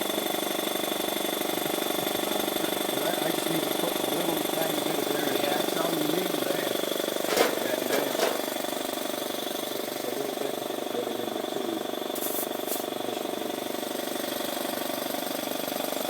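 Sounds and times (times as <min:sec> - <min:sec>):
air compressor pulsing drone: 0:00.0 - 0:16.0
short hisses of air: 0:12.2 - 0:12.9.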